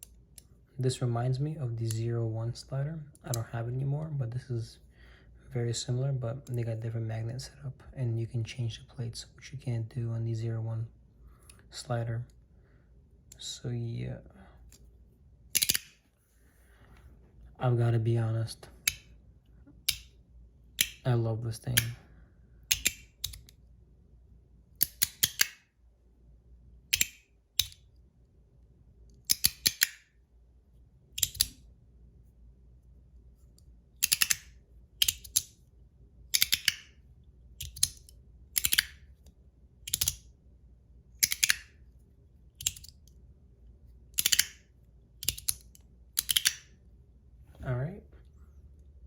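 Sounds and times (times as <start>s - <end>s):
magnetic fidget slider clicking: 34.0s - 35.5s, 37.6s - 39.0s, 39.8s - 40.2s, 44.2s - 44.6s, 45.2s - 46.6s.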